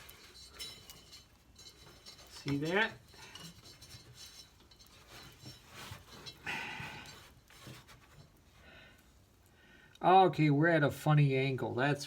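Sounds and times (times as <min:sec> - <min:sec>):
metal scraping: 0:00.0 - 0:08.4.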